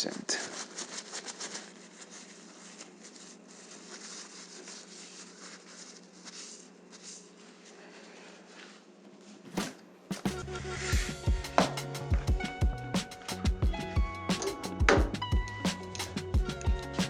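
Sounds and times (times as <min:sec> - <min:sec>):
rubbing and wiping bicycle: 0:00.0 - 0:13.5
music: 0:09.6 - 0:17.0.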